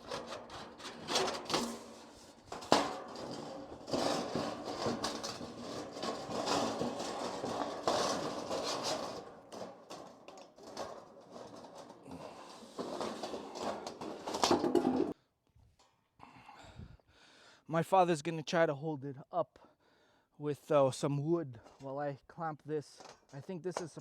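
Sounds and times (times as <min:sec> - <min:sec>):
metal clattering and scraping: 0:00.0 - 0:15.2.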